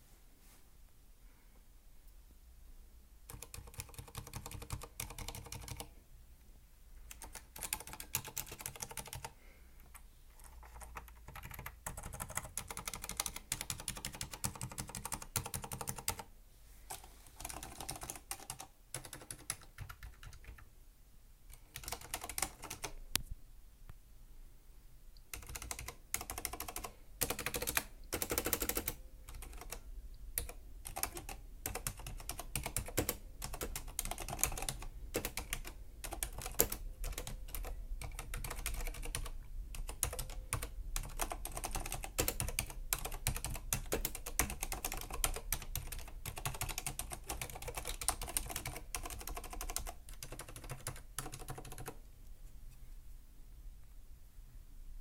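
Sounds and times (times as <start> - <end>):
mechanical keyboard typing: 3.3 - 5.9, 7.1 - 9.3, 9.9 - 16.3, 16.9 - 20.6, 21.5 - 23.0, 25.3 - 29.8, 30.4 - 52.0.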